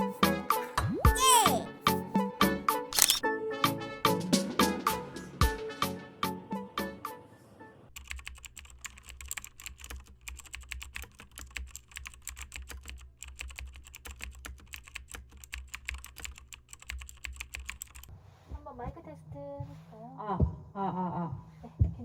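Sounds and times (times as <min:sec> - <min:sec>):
typing on computer keyboard: 0:07.9 - 0:18.1.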